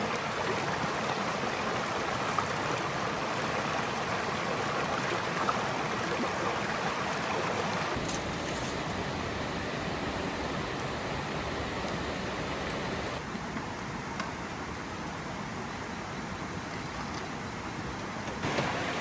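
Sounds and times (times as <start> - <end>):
flowing water rushing: 0.0 - 13.2, 18.4 - 19.0.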